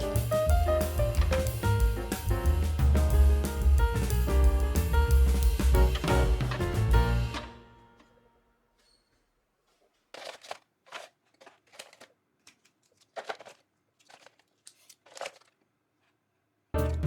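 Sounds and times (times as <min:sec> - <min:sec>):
plastic rustling and crinkling: 0:09.6 - 0:16.2.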